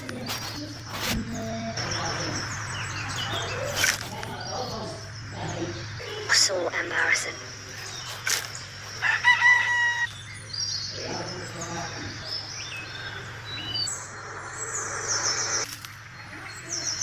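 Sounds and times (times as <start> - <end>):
bird crowing call: 9.0 - 10.1.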